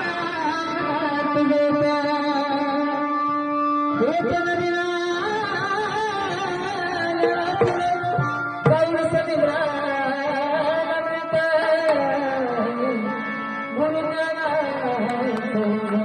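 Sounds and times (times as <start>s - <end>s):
instrumental accompaniment: 0.0s - 16.0s
drum strokes: 7.2s - 9.2s.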